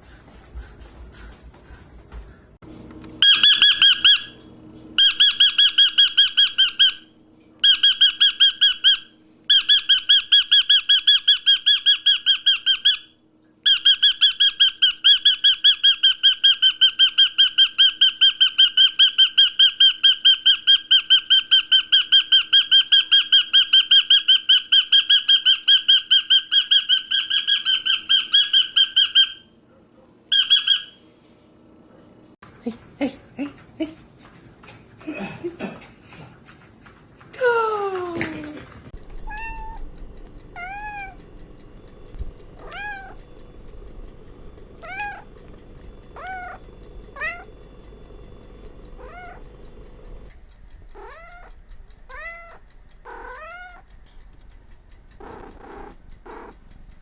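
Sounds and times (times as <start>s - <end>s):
bird calling in sharp repeated notes: 3.2s - 4.4s, 5.0s - 13.1s, 13.7s - 29.5s, 30.3s - 31.0s, 39.0s - 50.3s.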